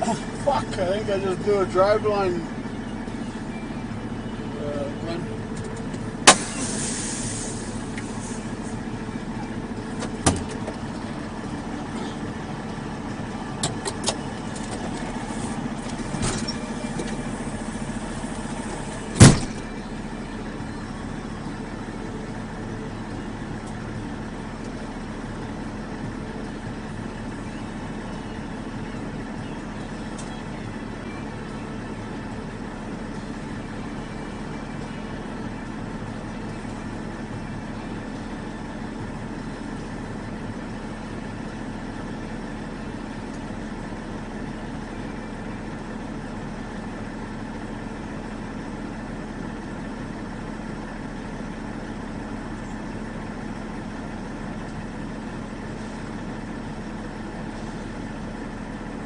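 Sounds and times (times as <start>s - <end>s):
diesel truck engine droning: 0.0s - 59.0s
loud sharp bang: 6.2s - 7.0s.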